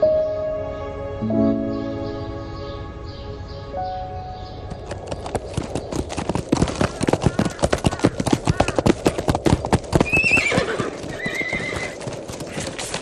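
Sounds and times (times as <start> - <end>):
horse hooves galloping: 4.7 - 13.0
horse whinnying: 10.0 - 12.0.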